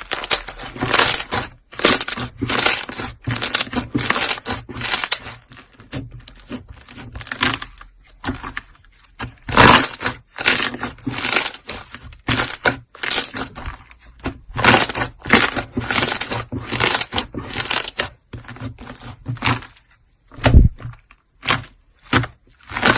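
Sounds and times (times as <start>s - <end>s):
slime squishing: 0.0s - 22.9s
dull thump: 20.3s - 21.0s.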